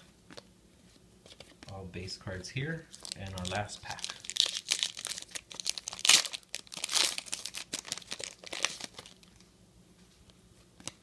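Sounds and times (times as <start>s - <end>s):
cards shuffling: 2.9s - 9.2s
foil pack tearing and crinkling: 2.9s - 9.3s.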